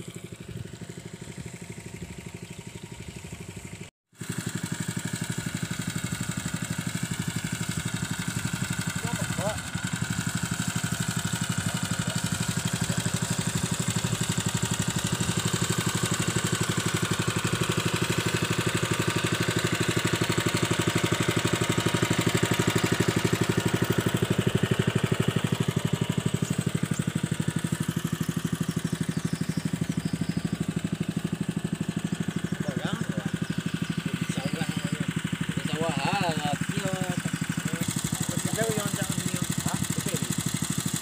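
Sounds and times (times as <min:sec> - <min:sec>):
water pump engine running: 0:00.0 - 0:41.0.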